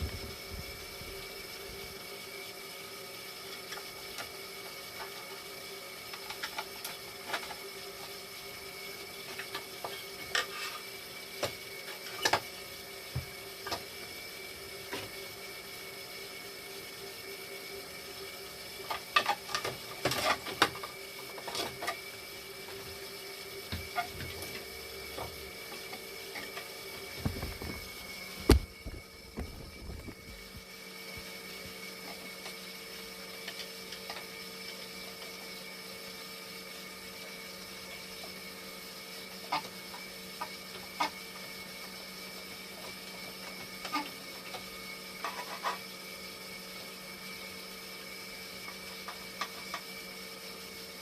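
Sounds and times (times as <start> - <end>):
steady machine hum: 0.0 - 3.5, 21.1 - 35.2.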